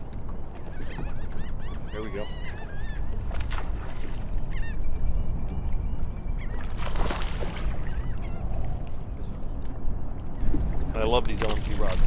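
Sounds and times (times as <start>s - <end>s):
waterfowl honking: 1.6s - 3.2s
wind rumble on microphone: 2.5s - 12.0s.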